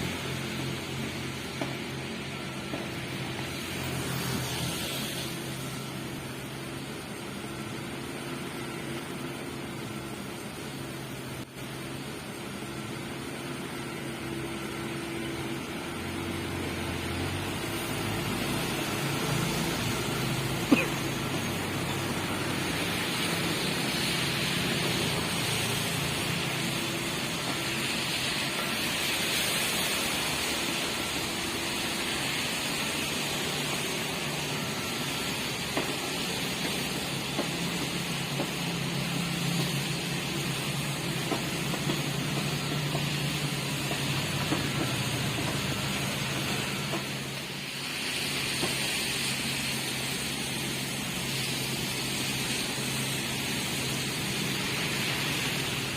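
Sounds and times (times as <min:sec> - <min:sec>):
diesel engines running: 0:00.0 - 0:55.9
hissing rush of rubble unloading: 0:00.0 - 0:55.9.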